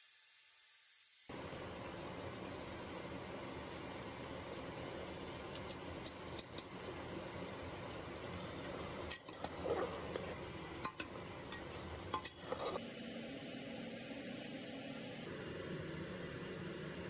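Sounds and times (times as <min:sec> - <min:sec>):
steady background hiss: 0:00.0 - 0:17.0
metal spoon clinking against cookware: 0:05.5 - 0:06.8, 0:09.0 - 0:12.8
spoon scraping: 0:08.5 - 0:12.8.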